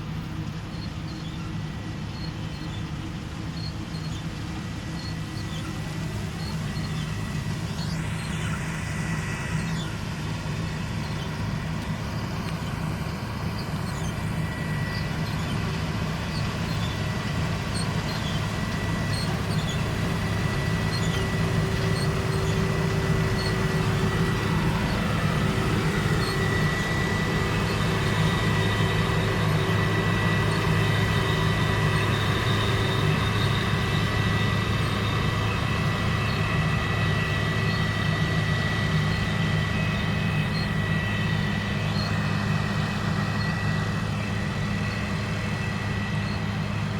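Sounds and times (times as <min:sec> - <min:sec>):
combine harvester engine drone: 0:00.0 - 0:46.9
high-pitched whine: 0:00.0 - 0:46.9.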